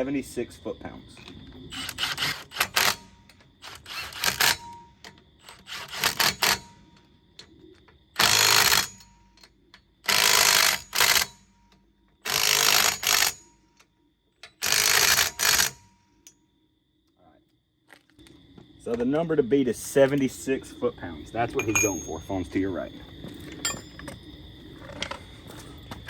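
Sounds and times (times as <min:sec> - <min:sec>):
impact wrench hammering: 0:21.6 - 0:22.3.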